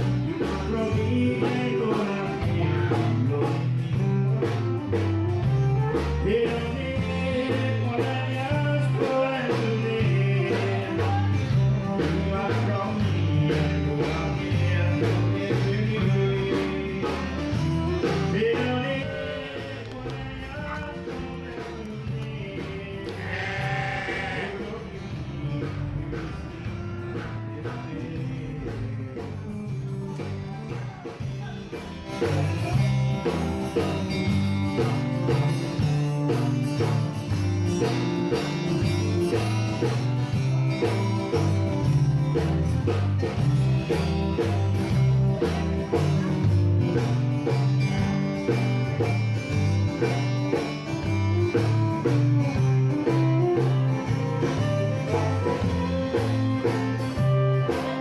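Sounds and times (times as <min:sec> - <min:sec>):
plucked guitar music with beat: 0:00.0 - 0:58.0.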